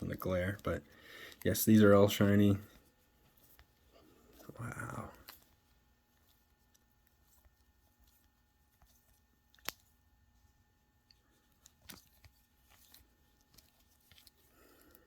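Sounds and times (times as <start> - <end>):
trading cards rustling: 0.0 - 15.0
small card clicks: 9.5 - 9.9.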